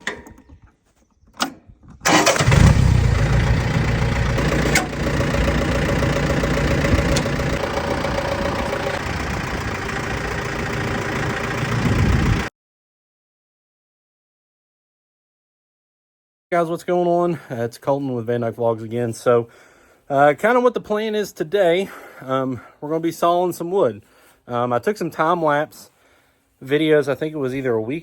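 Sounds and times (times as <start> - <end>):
gasoline engine running: 2.1 - 12.5.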